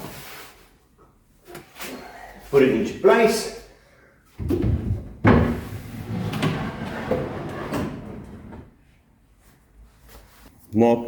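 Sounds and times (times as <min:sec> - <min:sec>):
drawer knocking: 0:04.4 - 0:08.7
drawer rolling on metal runners: 0:04.8 - 0:08.8.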